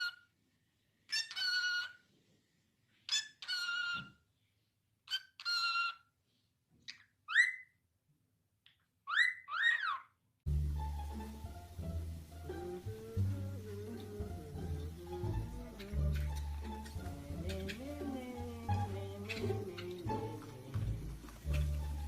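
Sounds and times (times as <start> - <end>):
parrot squawking: 0.0 - 0.3, 1.1 - 2.0, 3.1 - 4.2, 5.0 - 6.1, 6.9 - 7.7, 9.1 - 10.2, 15.4 - 22.0
parrot whistling: 1.1 - 2.0, 3.1 - 4.2, 5.1 - 6.0, 7.3 - 7.8, 9.1 - 10.1.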